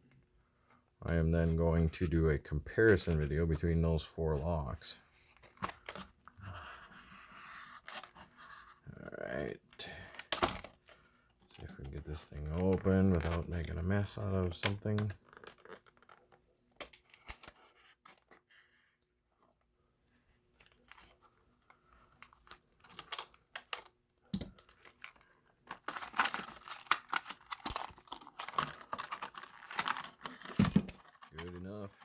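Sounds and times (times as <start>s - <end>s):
packaging tearing and crinkling: 24.6s - 30.4s
keys jingling: 29.8s - 31.1s.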